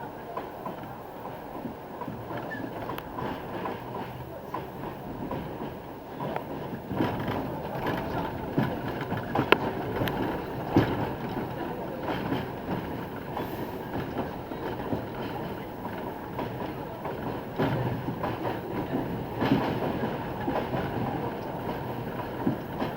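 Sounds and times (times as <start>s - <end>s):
train wheels rumbling on rail: 0.0s - 22.9s
wheels clacking over rail joints: 0.0s - 22.9s.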